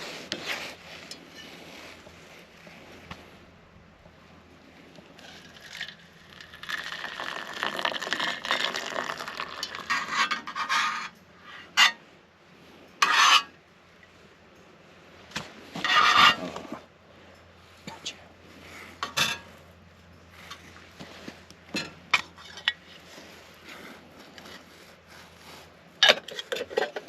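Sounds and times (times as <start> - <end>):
rubbing and scraping: 0.0 - 3.4, 8.0 - 12.0, 13.0 - 13.5, 15.7 - 16.8, 22.2 - 27.0.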